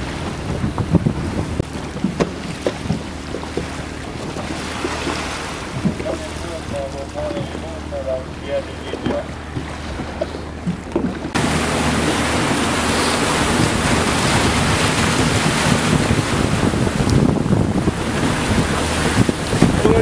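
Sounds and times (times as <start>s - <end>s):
boat engine running: 0.0s - 20.0s
water noise: 0.0s - 20.0s
wind rushing on microphone: 0.0s - 20.0s.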